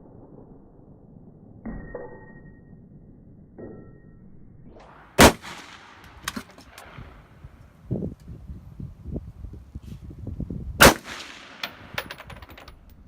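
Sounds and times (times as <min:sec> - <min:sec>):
gunshot: 0:04.8 - 0:07.0, 0:10.8 - 0:12.0.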